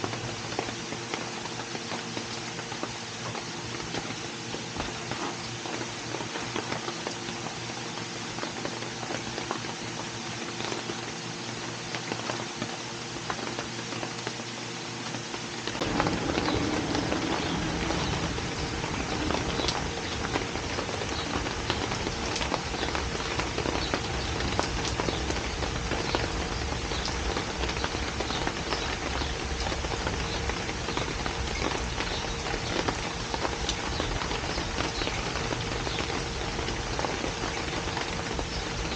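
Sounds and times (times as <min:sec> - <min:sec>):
rain pattering: 0:00.0 - 0:38.9
deep rumble: 0:15.7 - 0:27.8.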